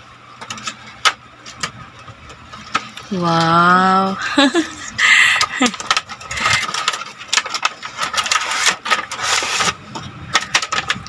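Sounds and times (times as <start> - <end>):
plastic clicks and crackles: 5.1 - 11.0
packaging crinkling and rustling: 5.5 - 11.0.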